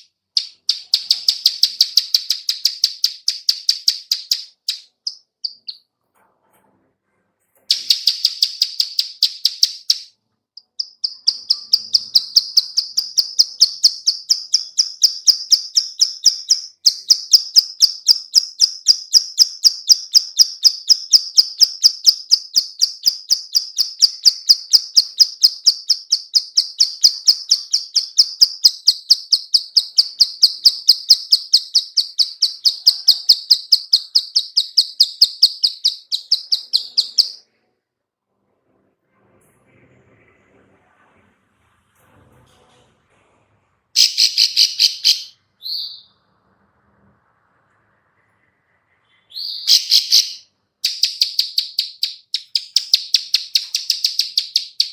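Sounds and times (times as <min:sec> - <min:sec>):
bird clicking call: 0:00.0 - 0:05.8, 0:49.6 - 0:54.9.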